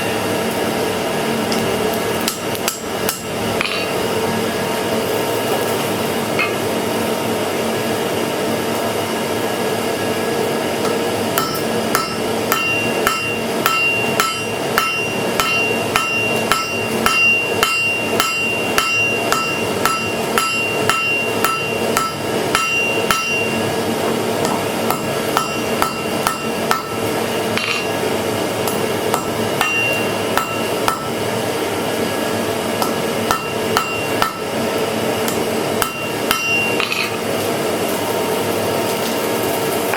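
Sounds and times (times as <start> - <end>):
steady hum: 0.0 - 39.9
hammer striking iron on anvil: 2.2 - 3.9, 10.8 - 23.6, 24.4 - 28.0, 28.6 - 31.2, 32.8 - 34.6, 35.2 - 37.2.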